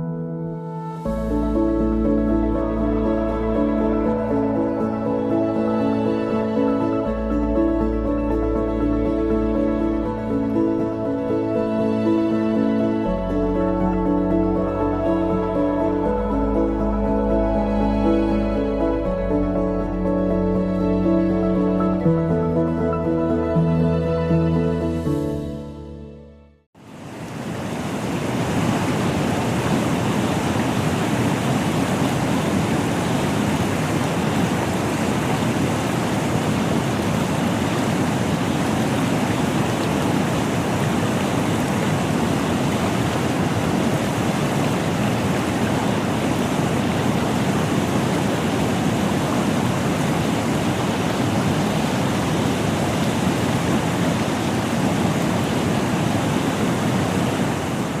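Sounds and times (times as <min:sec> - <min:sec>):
waterfall roaring: 0:26.8 - 0:58.0.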